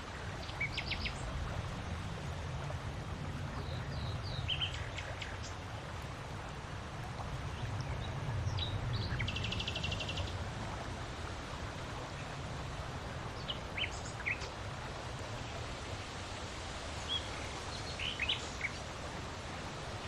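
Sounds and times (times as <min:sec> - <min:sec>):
small birds chirping: 0:17.0 - 0:18.9.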